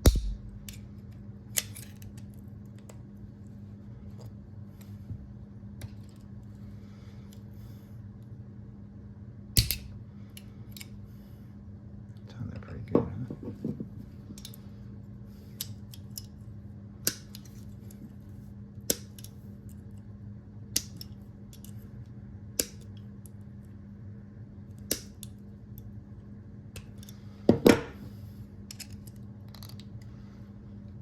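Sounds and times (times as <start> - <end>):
low hum: 0.0 - 1.8.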